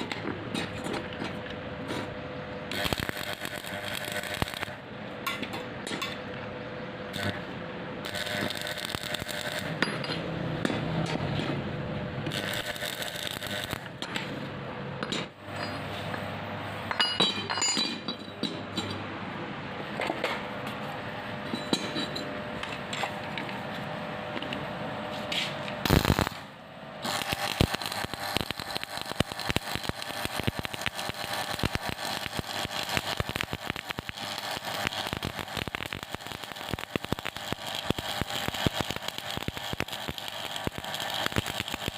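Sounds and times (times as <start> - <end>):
welding arc crackle: 2.7 - 4.8, 7.1 - 9.8, 12.3 - 14.0, 25.8 - 41.9.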